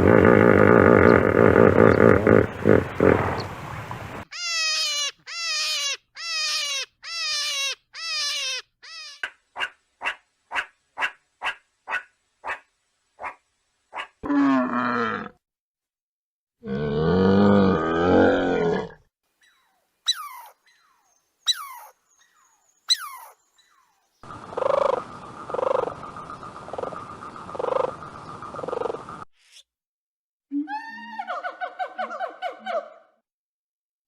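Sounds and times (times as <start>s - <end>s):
rough roar-like animal call: 0.0s - 3.6s, 14.2s - 15.4s, 16.6s - 19.1s
pulsing animal calls: 0.0s - 9.0s, 24.2s - 29.2s.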